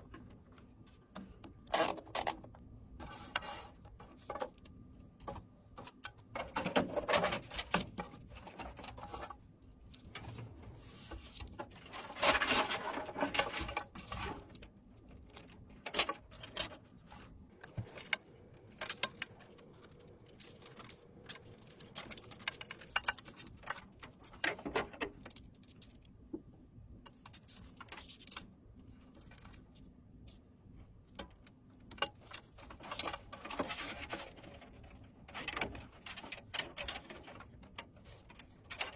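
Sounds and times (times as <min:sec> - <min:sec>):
plastic and metal rattles: 0:00.0 - 0:26.5, 0:30.8 - 0:38.9
rustling and scraping: 0:00.0 - 0:38.9.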